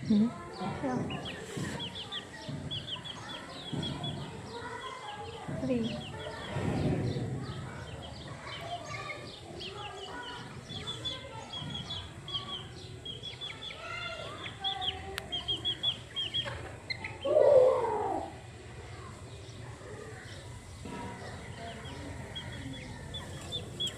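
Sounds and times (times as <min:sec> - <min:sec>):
chickens clucking: 0:00.0 - 0:23.9
high bird chirps: 0:07.8 - 0:17.4.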